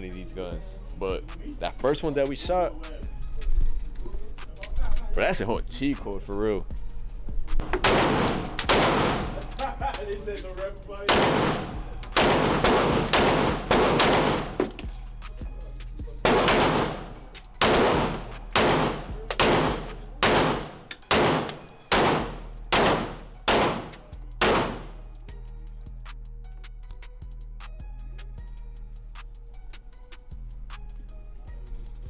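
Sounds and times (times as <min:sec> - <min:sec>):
gunshots with echo: 0:07.6 - 0:09.6, 0:11.1 - 0:15.0, 0:16.2 - 0:25.1.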